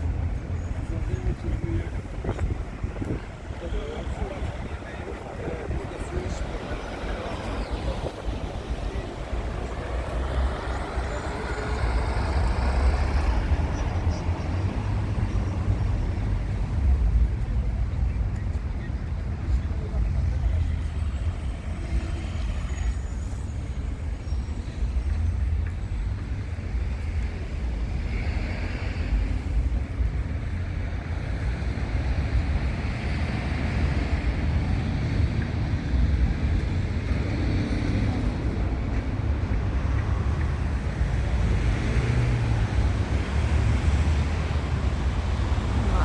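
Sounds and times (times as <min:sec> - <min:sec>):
wind buffeting microphone: 0:00.0 - 0:10.5.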